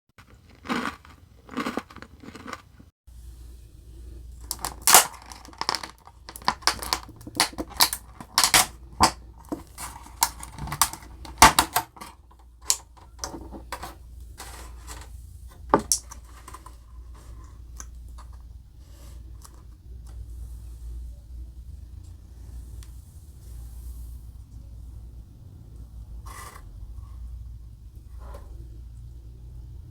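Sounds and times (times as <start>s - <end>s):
close eating sounds: 0.2s - 2.9s.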